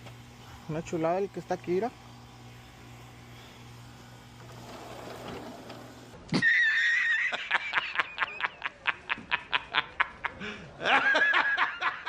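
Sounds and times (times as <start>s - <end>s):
air conditioner humming: 0.0s - 6.3s
wheezy snickering laugh: 6.4s - 12.0s.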